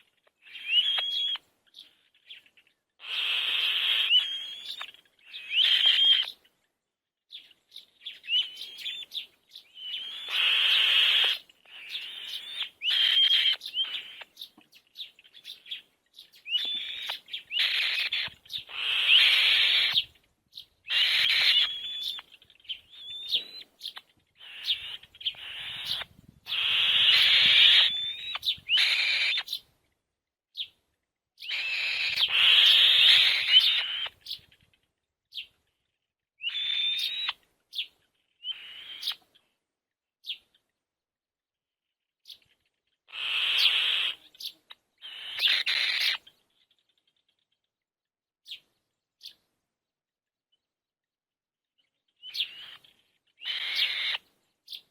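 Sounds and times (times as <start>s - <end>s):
young birds raspy calls: 3.0s - 6.4s, 8.3s - 14.5s, 16.6s - 20.1s, 20.9s - 29.6s, 31.4s - 34.4s, 38.5s - 39.2s, 43.1s - 46.3s, 52.4s - 54.2s.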